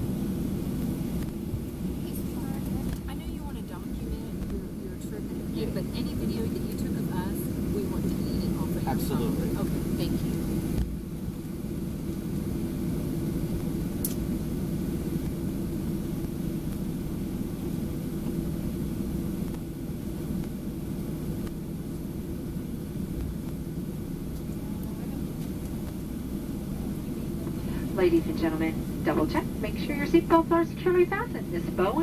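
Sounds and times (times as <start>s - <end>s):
airliner cabin engine rumble: 0.0s - 32.0s
faint click: 14.0s - 14.2s.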